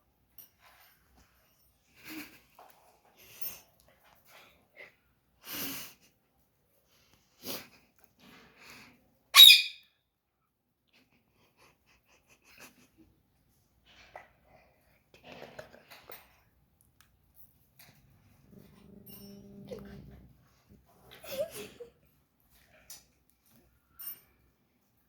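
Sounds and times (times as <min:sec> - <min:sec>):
parrot high-pitched squawk: 0:09.4 - 0:09.9.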